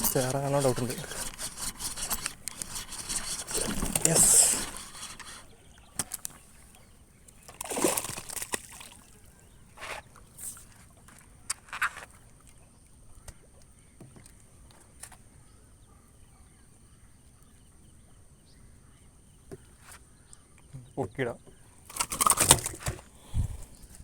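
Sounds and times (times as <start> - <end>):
water splashing and sloshing: 7.4 - 9.2.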